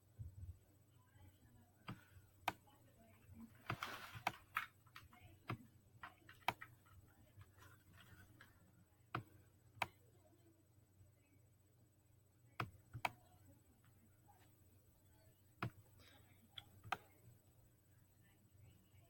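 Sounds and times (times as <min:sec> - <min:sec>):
soft rustle: 0:03.4 - 0:04.6.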